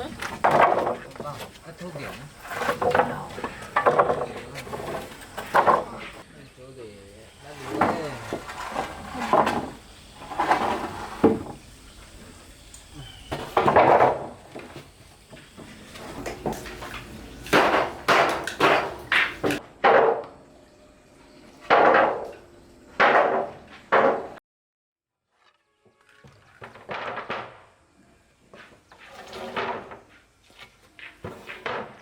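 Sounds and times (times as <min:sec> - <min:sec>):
hammer striking wood: 0:17.5 - 0:20.3.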